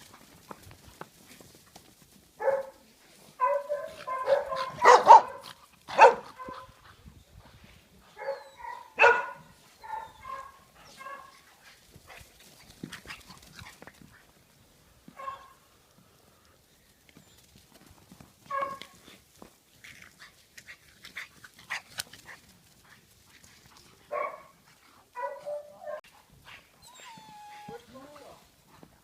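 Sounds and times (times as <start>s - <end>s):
dog barking: 2.4s - 2.8s, 3.4s - 6.7s, 8.2s - 11.3s, 15.2s - 15.6s, 18.5s - 18.9s, 24.1s - 24.6s, 25.2s - 26.0s.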